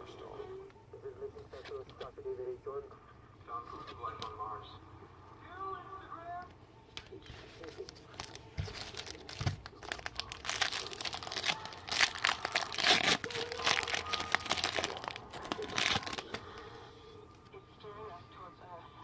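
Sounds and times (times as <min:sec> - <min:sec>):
plastic wrapper crinkling and tearing: 0:07.6 - 0:16.4.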